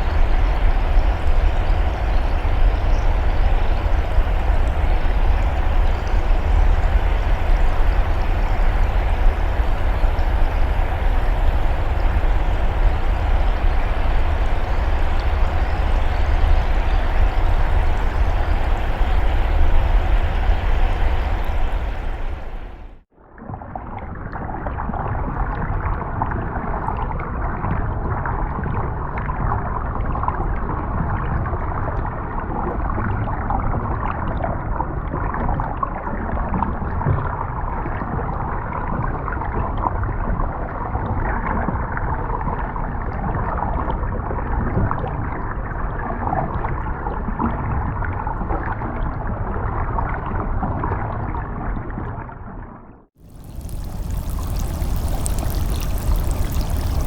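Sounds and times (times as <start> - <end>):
underwater water current rushing: 53.2 - 57.0.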